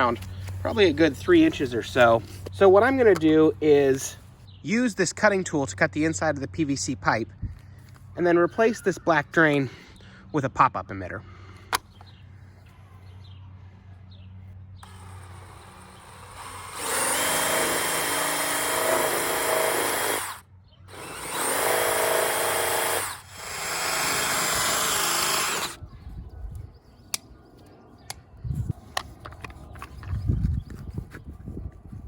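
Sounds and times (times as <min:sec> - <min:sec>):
power tool cutting plastic pipe: 0:14.8 - 0:25.8.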